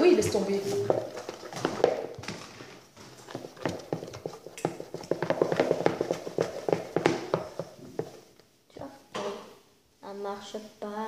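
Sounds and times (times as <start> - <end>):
foam mixture clicking in bowl: 3.2 - 7.3.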